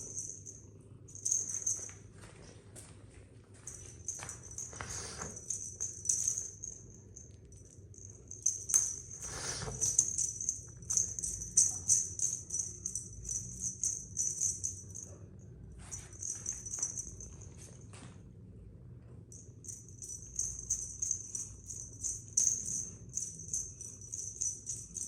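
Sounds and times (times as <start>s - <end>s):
small jingle bell jingling: 0.0s - 2.0s, 3.7s - 15.2s, 15.8s - 17.8s, 19.3s - 25.0s.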